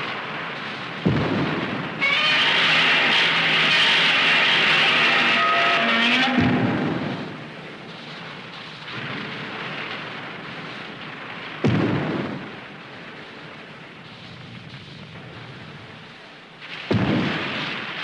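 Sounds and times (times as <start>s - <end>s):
steady hiss: 0.0s - 18.0s
loud boom with low rumble: 0.6s - 7.9s.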